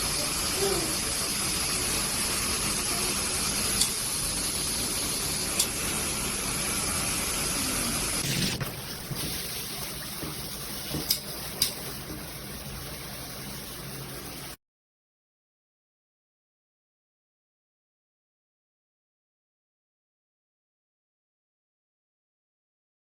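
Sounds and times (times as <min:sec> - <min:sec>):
shower head spraying water: 0:00.0 - 0:14.6.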